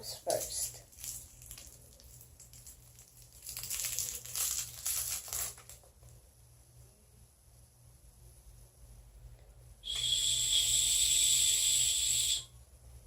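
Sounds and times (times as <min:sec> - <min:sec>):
candy wrapper crinkling and tearing: 0:00.3 - 0:05.9.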